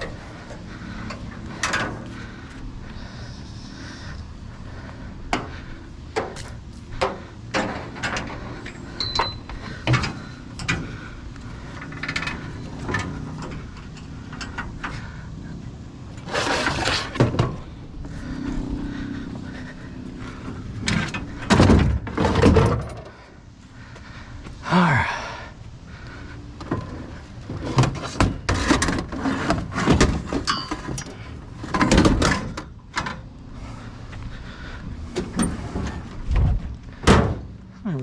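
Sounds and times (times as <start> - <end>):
low engine hum: 0.0 - 38.0
scraping and rustling: 16.2 - 17.3
knocks and clanks of items: 20.8 - 23.1, 27.5 - 33.2.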